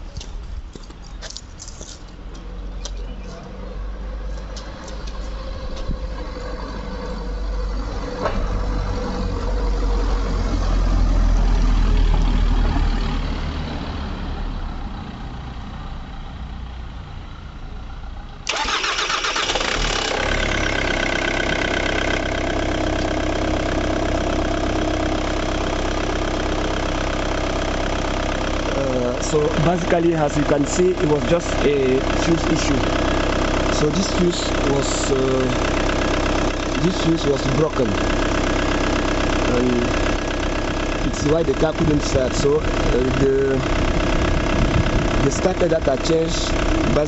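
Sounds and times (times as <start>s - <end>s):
car engine idling: 1.4s - 13.5s, 14.2s - 47.0s
starter motor cranking: 18.5s - 23.2s
low rumble: 41.8s - 45.3s.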